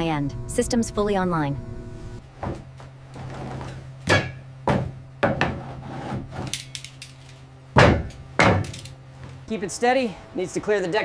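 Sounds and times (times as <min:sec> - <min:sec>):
steady low hum: 0:00.0 - 0:11.0
sharp knocks: 0:02.4 - 0:06.8, 0:07.8 - 0:09.4.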